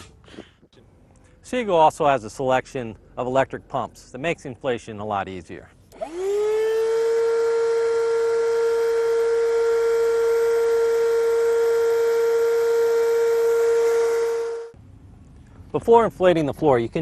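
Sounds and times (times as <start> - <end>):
electric air pump whining: 5.9 - 14.8.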